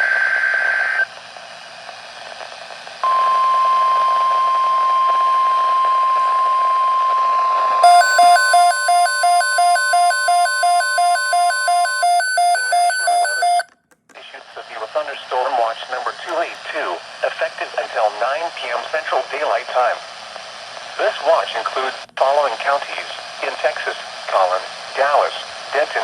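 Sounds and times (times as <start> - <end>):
steady radio warning tone: 7.8 - 13.6
two-pitch electronic alarm beep: 7.8 - 13.7.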